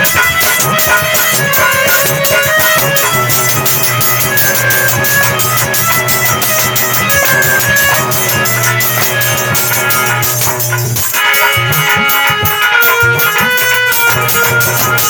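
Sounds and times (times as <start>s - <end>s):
fast drum beat: 0.0s - 15.0s
held melody notes: 0.0s - 15.0s
higher melody: 0.0s - 15.0s.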